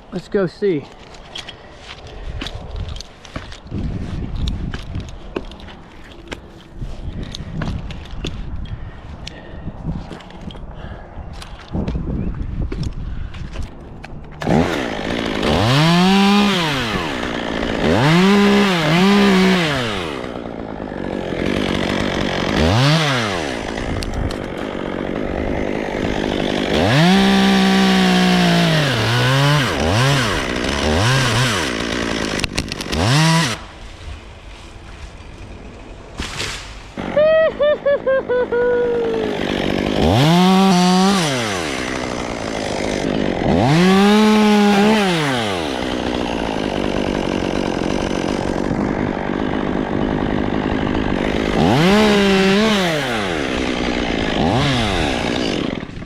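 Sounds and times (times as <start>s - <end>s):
chainsaw revving: 14.4s - 33.8s, 36.9s - 56.0s.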